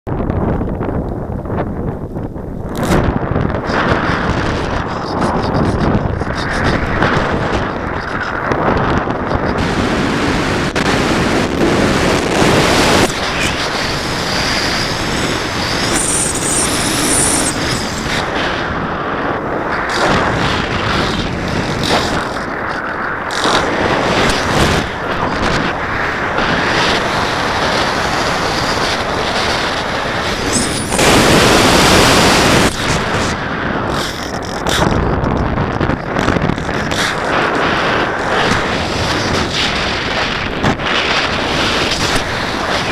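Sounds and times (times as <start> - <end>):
wind buffeting microphone: 0.1 - 42.9
faint high whine: 12.2 - 20.1, 29.8 - 32.9.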